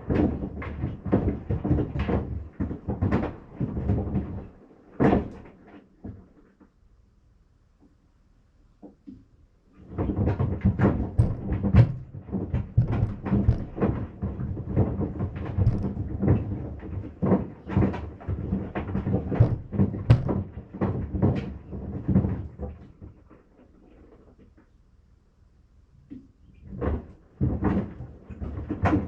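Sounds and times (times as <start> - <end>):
sandals knocking in washing machine: 0.0 - 5.4, 9.8 - 23.2, 26.7 - 29.0.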